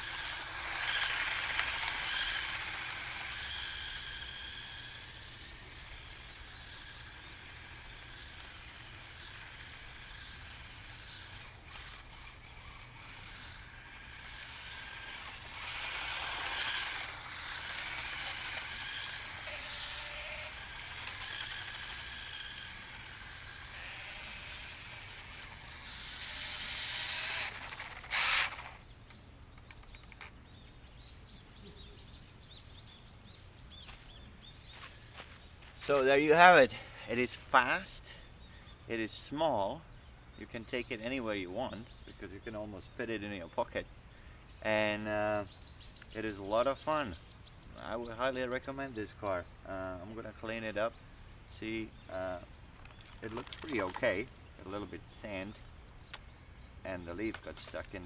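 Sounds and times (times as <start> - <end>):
tyres hissing on dirt: 0.0 - 28.8
toy car motor whining: 0.0 - 28.9, 51.6 - 55.6.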